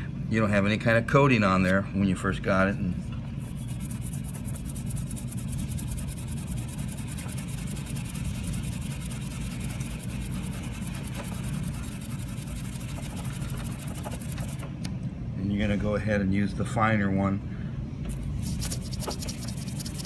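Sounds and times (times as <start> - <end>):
steady low hum: 0.0 - 20.0
abrasive pad scratching metal: 3.4 - 14.6, 18.1 - 20.0.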